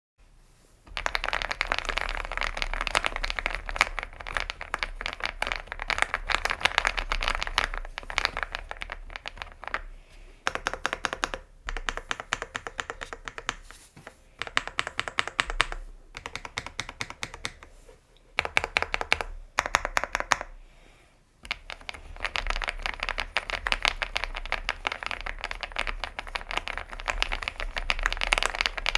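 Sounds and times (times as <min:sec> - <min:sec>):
mechanical keyboard typing: 0:01.0 - 0:09.9, 0:10.5 - 0:13.6, 0:14.4 - 0:17.7, 0:18.4 - 0:20.5, 0:21.5 - 0:28.9.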